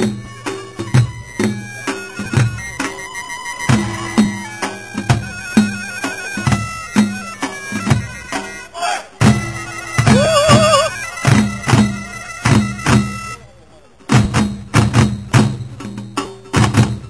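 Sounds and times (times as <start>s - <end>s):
drums beaten in steady pulse: 0.0s - 13.4s, 14.0s - 17.0s
shrill reed pipe melody: 0.0s - 13.6s.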